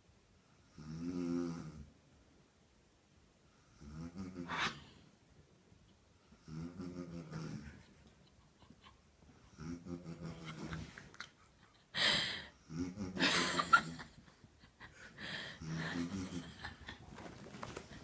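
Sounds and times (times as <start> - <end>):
loud noisy breath out: 12.0 - 12.5, 15.2 - 15.6
woman snoring: 15.5 - 16.4.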